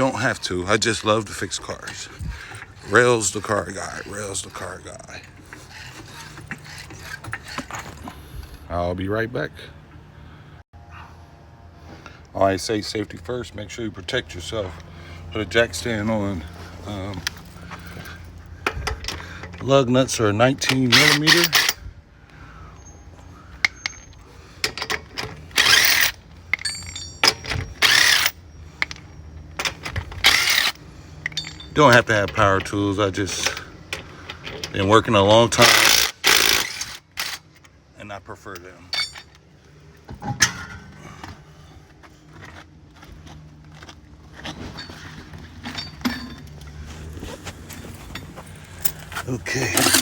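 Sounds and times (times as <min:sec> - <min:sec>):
metal tools clinking: 0:00.0 - 0:08.2, 0:15.8 - 0:21.8, 0:23.6 - 0:37.8, 0:38.4 - 0:39.4, 0:44.3 - 0:50.0
impact wrench bursts: 0:20.7 - 0:21.8, 0:25.4 - 0:28.4, 0:30.2 - 0:31.7, 0:35.5 - 0:37.5, 0:49.6 - 0:50.0.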